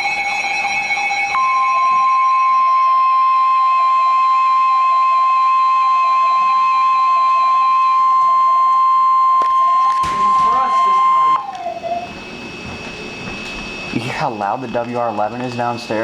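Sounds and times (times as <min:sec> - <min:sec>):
faint wavering tone: 0:00.0 - 0:12.6
steady alert tone: 0:09.6 - 0:11.5.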